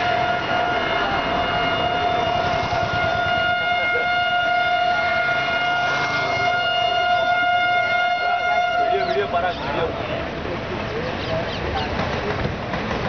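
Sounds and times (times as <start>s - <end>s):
locomotive horn steady note: 0.0s - 9.4s.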